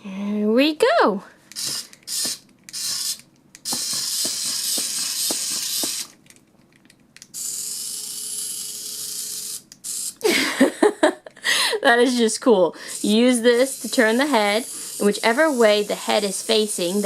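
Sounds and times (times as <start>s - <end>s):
tiny motor buzzing: 1.6s - 6.1s, 7.4s - 10.2s, 12.8s - 17.0s.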